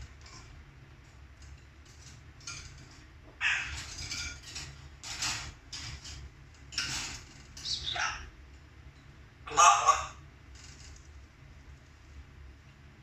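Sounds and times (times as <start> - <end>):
bird squawking: 3.4 - 3.8, 7.6 - 8.3, 9.5 - 10.2.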